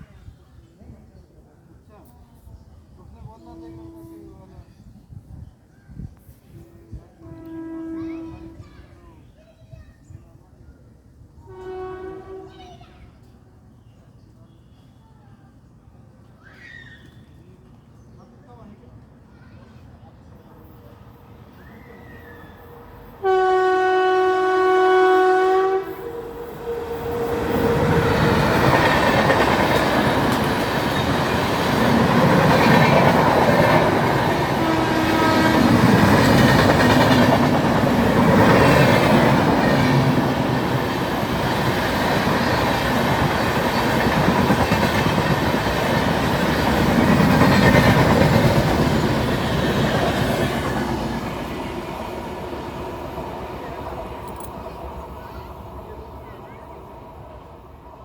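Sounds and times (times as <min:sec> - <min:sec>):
train horn blast: 0:03.4 - 0:04.4, 0:06.5 - 0:08.6, 0:11.4 - 0:12.6, 0:23.2 - 0:30.1, 0:34.0 - 0:37.5
train passing rumble: 0:19.8 - 0:58.0.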